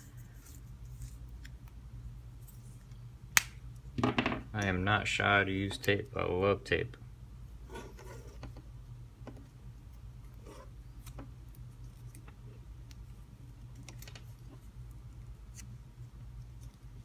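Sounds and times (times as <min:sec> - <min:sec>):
tape crackling and clicking: 0:02.8 - 0:04.0, 0:10.3 - 0:15.8.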